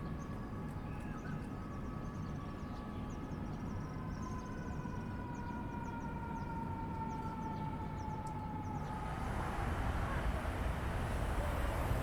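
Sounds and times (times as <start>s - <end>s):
low traffic rumble: 8.8s - 12.0s
siren-like falling tone: 8.8s - 12.0s
rushing noise: 8.9s - 12.0s.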